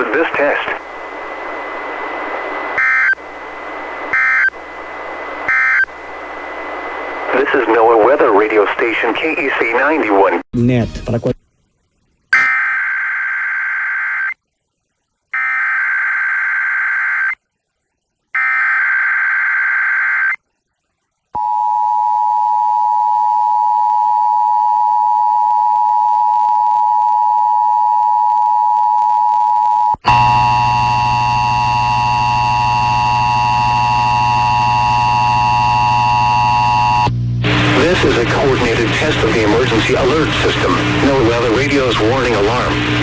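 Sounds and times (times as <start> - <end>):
harsh buzzy steady tone: 0.0 - 10.4, 30.0 - 43.0.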